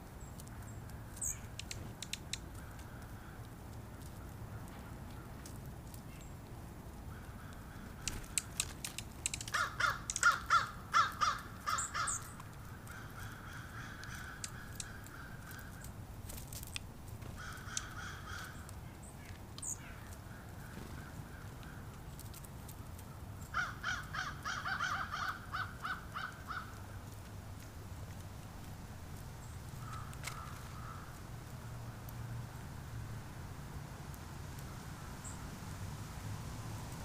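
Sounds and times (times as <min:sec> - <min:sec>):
small birds chirping: 0:00.0 - 0:32.6, 0:34.6 - 0:35.5
outdoor background noise: 0:00.0 - 0:37.0
bird harsh cawing calls: 0:07.1 - 0:08.6, 0:09.4 - 0:16.0, 0:17.3 - 0:18.8, 0:23.5 - 0:27.0, 0:29.8 - 0:31.2.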